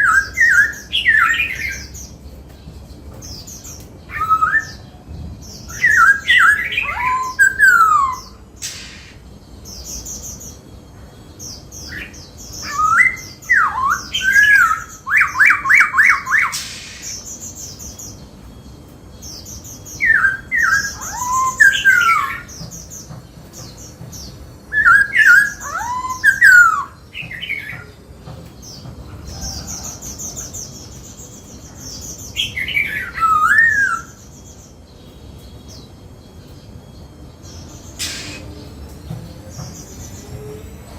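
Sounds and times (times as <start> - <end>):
bird singing whistled phrases: 4.1 - 5.0, 5.7 - 9.2, 11.9 - 17.3, 20.0 - 22.5, 24.7 - 27.9, 32.4 - 34.2, 37.0 - 38.7.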